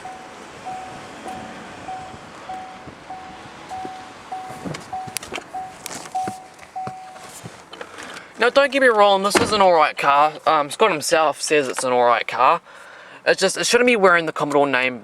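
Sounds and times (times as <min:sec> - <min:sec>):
electronic beeper high tone: 0:00.0 - 0:07.3
wind noise: 0:00.0 - 0:07.8
street noise: 0:00.0 - 0:15.0.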